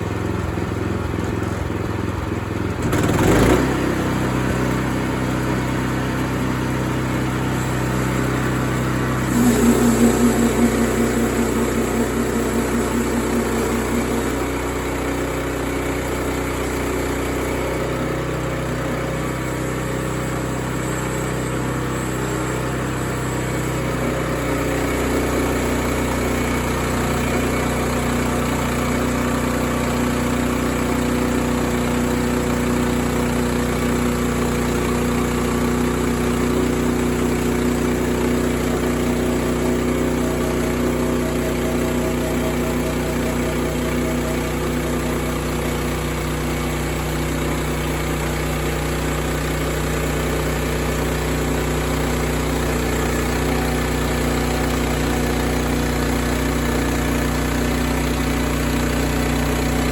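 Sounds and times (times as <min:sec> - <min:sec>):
engine running: 0:00.0 - 0:59.9
loud pulsing beat: 0:09.2 - 0:15.6.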